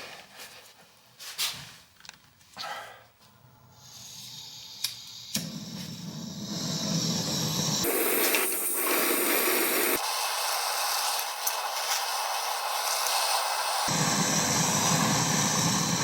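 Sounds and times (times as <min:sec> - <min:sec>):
heat gun blowing hiss: 0:03.8 - 0:16.0.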